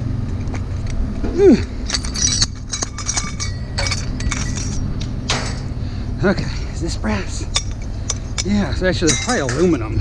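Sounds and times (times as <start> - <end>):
scrap metal clinking: 1.7 - 5.8, 7.5 - 9.8.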